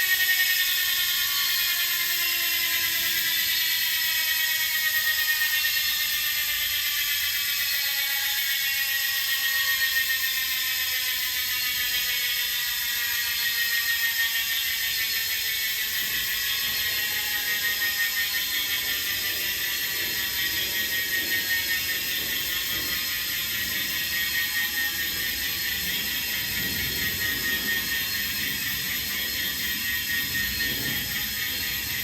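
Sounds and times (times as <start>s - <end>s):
bicycle freehub ratcheting: 13.6s - 32.0s.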